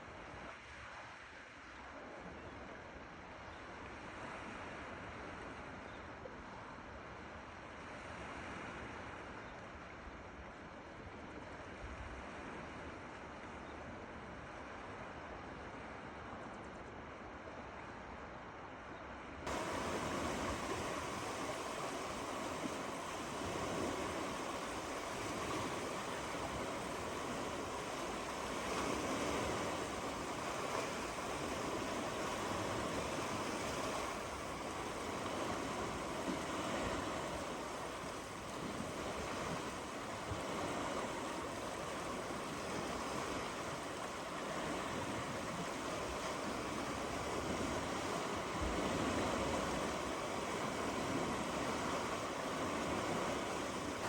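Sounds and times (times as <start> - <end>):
surf on a shore: 0.0 - 54.0
wind: 0.0 - 54.0
rushing water: 19.5 - 54.0.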